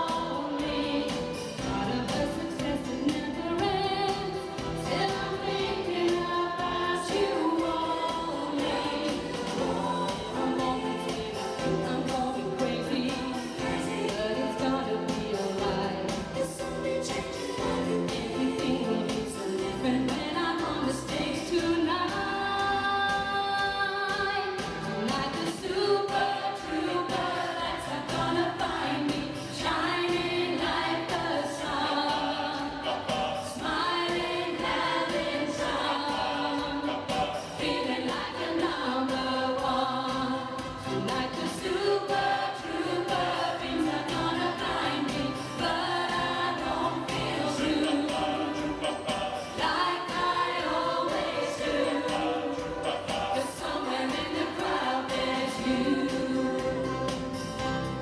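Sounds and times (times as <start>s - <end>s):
choir singing: 0.0s - 58.0s
accompaniment with steady beat: 24.5s - 58.0s.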